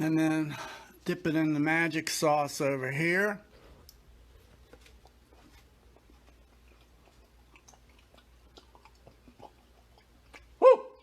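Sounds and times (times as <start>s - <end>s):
chewing with soft clicks: 3.8s - 10.6s.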